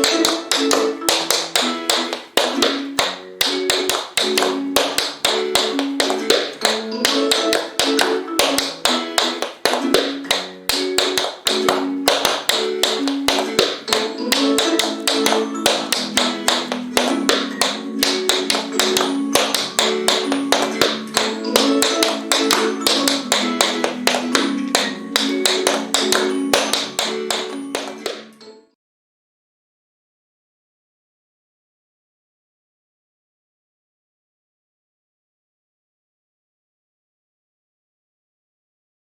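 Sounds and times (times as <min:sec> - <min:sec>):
tap shoes striking floor: 0:00.0 - 0:28.4
upbeat plucked-string backing music: 0:00.0 - 0:28.4.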